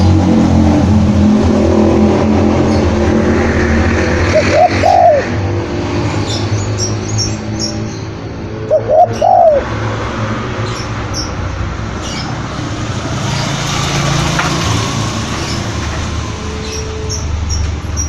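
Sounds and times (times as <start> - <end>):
noisy background: 0.0 - 18.0
dove cooing: 4.2 - 5.4, 8.5 - 9.8
small birds chirping: 10.6 - 14.2.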